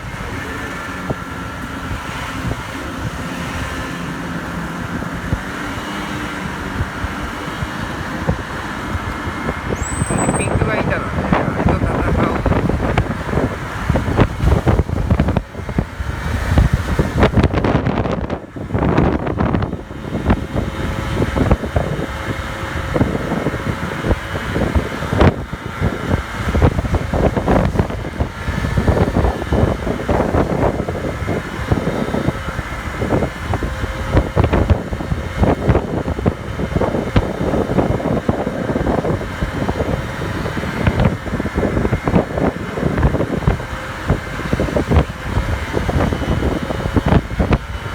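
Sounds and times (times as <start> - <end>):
moped engine running: 0.0 - 47.9
wind buffeting on microphone: 0.0 - 47.9.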